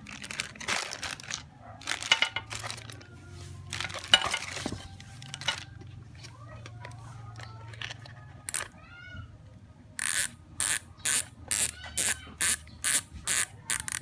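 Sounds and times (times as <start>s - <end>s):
bicycle hub ratcheting clicks: 7.7s - 8.7s, 10.0s - 14.0s.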